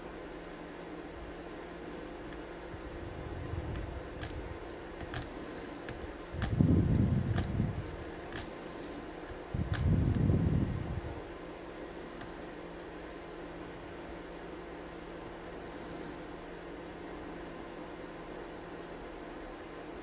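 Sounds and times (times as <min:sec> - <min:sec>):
low handling rumbles: 0:02.7 - 0:08.4.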